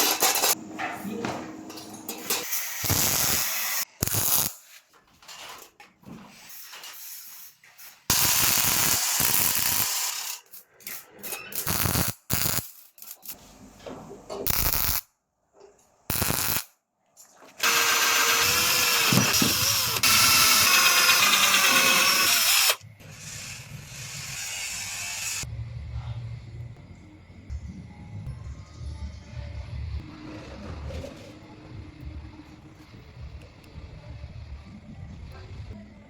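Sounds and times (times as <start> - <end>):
power tool running: 17.6 - 25.5.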